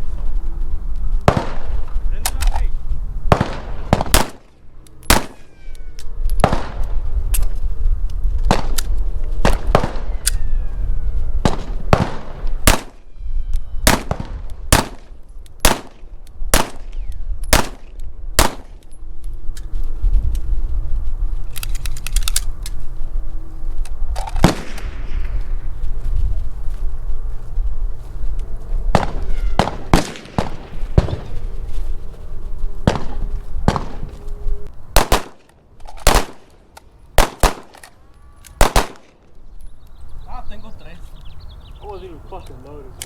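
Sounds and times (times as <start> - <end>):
rapid faint gunshots: 1.2 - 1.9, 3.3 - 4.5, 6.4 - 7.0, 8.5 - 8.8, 11.4 - 13.0, 24.2 - 25.3, 28.9 - 31.4, 32.8 - 34.1, 35.0 - 36.5, 37.2 - 37.8, 38.6 - 39.2
gunshots with ringing echo: 3.3 - 4.4, 5.0 - 5.5, 11.4 - 13.0, 13.8 - 16.9, 28.9 - 31.4, 32.8 - 34.1, 35.0 - 35.4, 37.2 - 37.8, 38.6 - 39.1.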